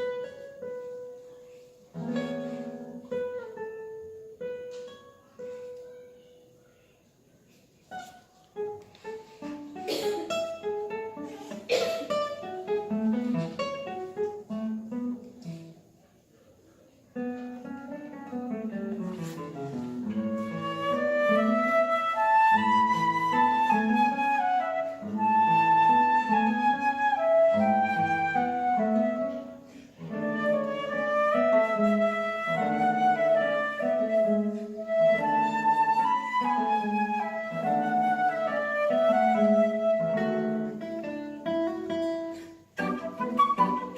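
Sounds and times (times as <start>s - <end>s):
plucked acoustic guitar chords: 8.0s - 15.7s
flute melody: 19.2s - 41.4s, 42.8s - 43.9s.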